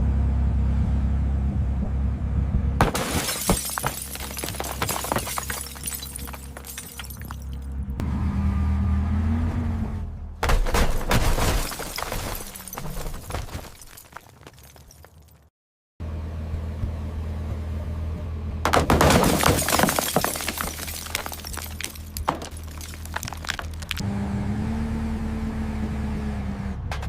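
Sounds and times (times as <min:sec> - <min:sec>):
car crash: 0:02.8 - 0:07.7, 0:10.4 - 0:15.2, 0:18.6 - 0:24.0
glass shattering: 0:02.8 - 0:07.7, 0:10.4 - 0:15.4, 0:18.7 - 0:24.0
debris clattering: 0:02.8 - 0:07.8, 0:10.4 - 0:15.4, 0:18.7 - 0:24.0.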